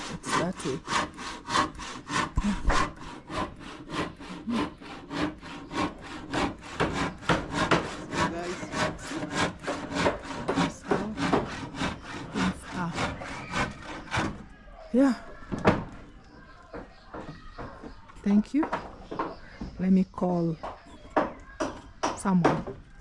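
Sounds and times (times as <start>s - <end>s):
hand saw cutting: 0.0s - 14.4s.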